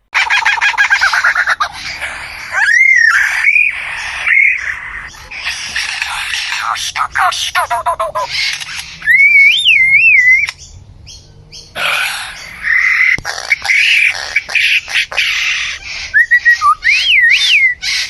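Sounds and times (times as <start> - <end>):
harsh scratchy bird chirps: 0.2 - 18.0
bird warbling whistles: 2.6 - 5.1, 9.0 - 10.6, 16.0 - 18.0.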